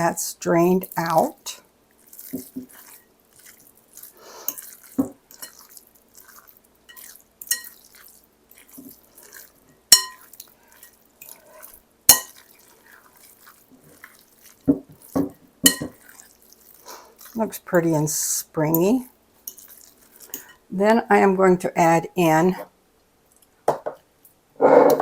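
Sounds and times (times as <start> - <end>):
spoon scraping a bowl: 2.0 - 18.0.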